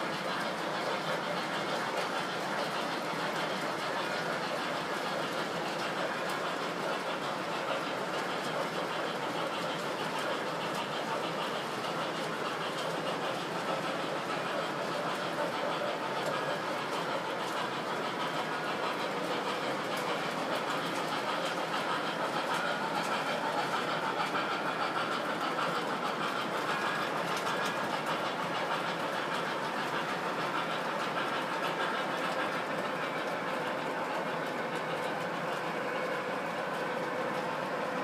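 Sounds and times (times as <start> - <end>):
model train motor whir: 0.0 - 38.0
wheels clicking over rails: 0.0 - 38.0.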